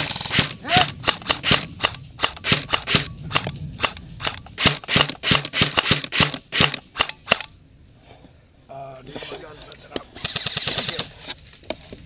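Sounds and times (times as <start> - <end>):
airsoft gun shots: 0.0 - 7.5.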